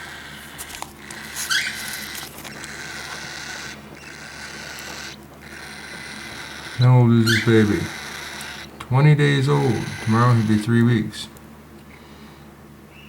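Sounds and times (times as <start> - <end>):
baby bird cheeping: 0.0 - 11.3
faint scratching and tapping: 0.4 - 3.3.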